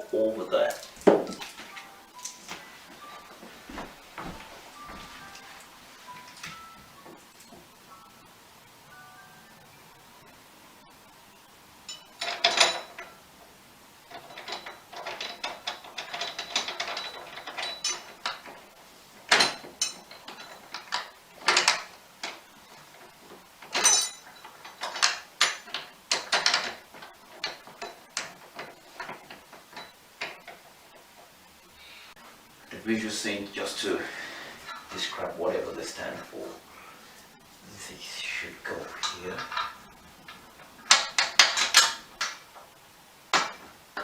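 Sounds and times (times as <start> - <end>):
metal frame parts clicking: 11.9 - 13.5, 14.1 - 31.4, 38.7 - 42.7
sharp knocks of metal parts: 23.6 - 30.5, 39.0 - 42.4, 43.3 - 44.0.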